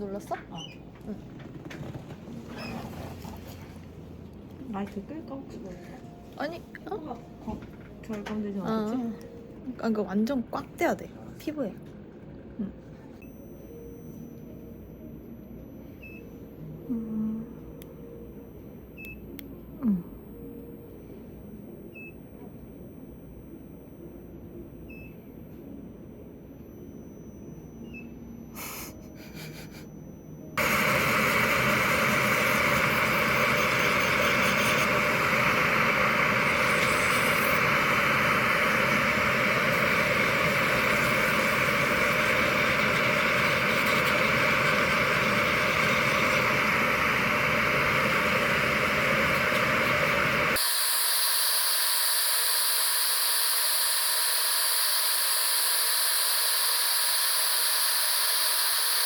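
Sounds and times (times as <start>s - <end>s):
machine hissing: 30.6s - 59.0s.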